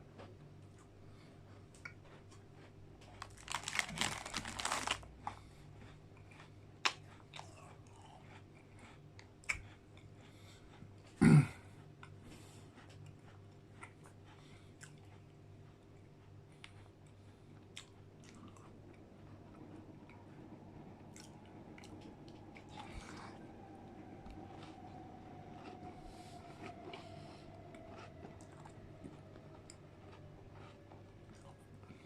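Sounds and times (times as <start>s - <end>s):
chewing with small clicks: 0.0s - 3.5s, 5.2s - 20.4s, 21.0s - 32.0s
biscuit crunching: 2.6s - 8.4s.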